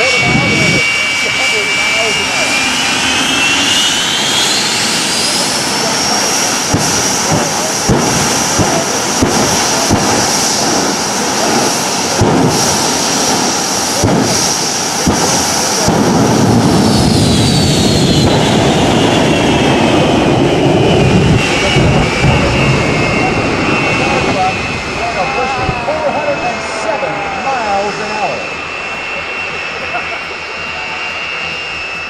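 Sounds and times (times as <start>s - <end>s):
deep engine rumble: 0.0s - 32.0s
jet engines whining: 0.0s - 32.0s.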